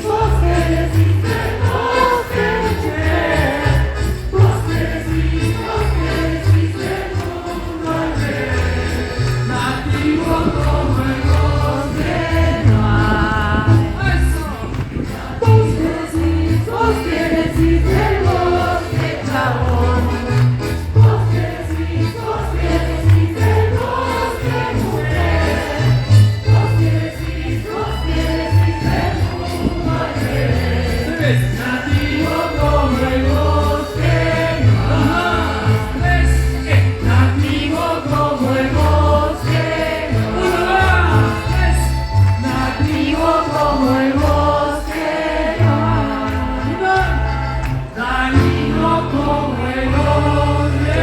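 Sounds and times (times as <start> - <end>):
accompaniment with strong bass: 0.0 - 51.0
large choir singing: 0.0 - 51.0.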